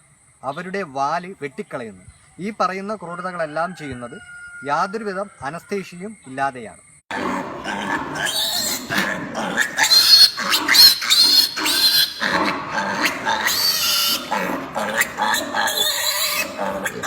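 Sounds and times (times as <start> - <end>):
piglets squealing in distress: 7.1 - 17.0.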